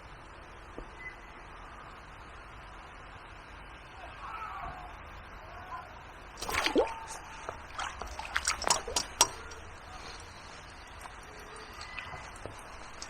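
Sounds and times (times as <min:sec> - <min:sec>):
water splashing and dripping: 0:06.4 - 0:13.0
water swish: 0:06.4 - 0:13.0.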